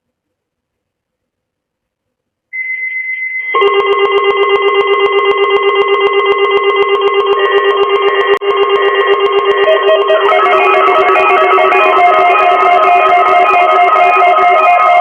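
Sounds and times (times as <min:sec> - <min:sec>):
shrill buzzy electronic tone: 0:02.6 - 0:15.0
ringing mix of electronic tones: 0:03.3 - 0:15.0.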